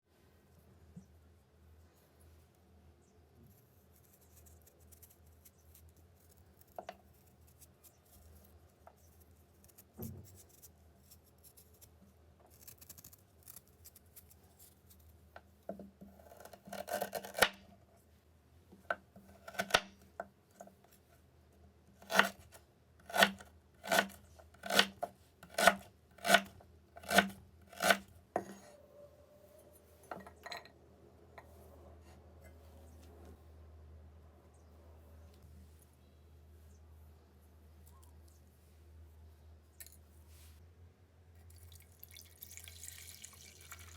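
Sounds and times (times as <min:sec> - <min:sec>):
knife cutting food: 0:23.1 - 0:28.1
sharp knife cuts: 0:23.1 - 0:28.1.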